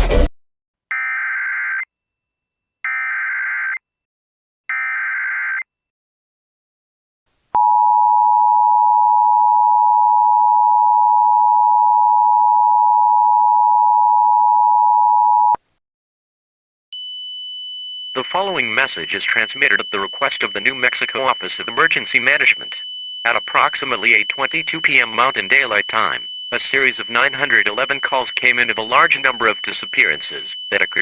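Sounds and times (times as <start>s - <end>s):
screechy digital data tones: 18.2s - 31.0s
two-tone attention signal: 18.2s - 31.0s.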